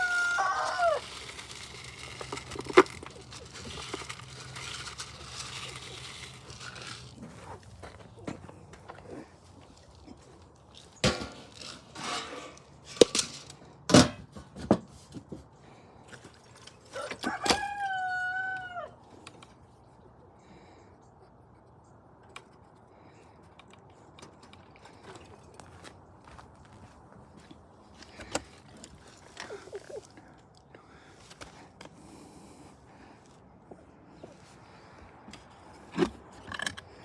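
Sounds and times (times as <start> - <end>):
rooster crowing: 0.0 - 1.4, 16.9 - 19.0.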